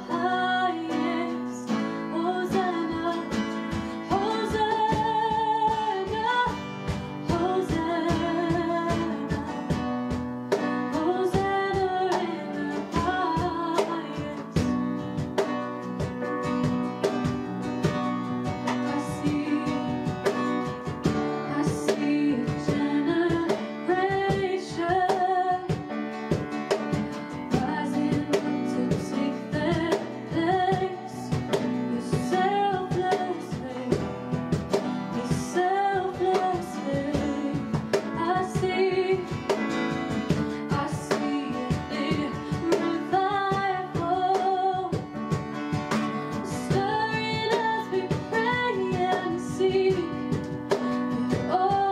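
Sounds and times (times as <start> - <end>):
person singing: 0.0 - 9.8, 18.7 - 20.4, 21.5 - 25.9, 27.4 - 34.2, 35.0 - 45.1, 46.3 - 50.3
strummed acoustic guitar: 0.0 - 51.9.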